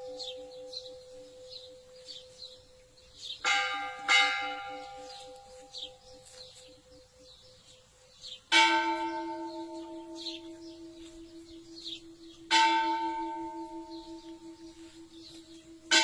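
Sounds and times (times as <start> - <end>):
church bell tolling: 0.0 - 7.0, 8.5 - 16.0.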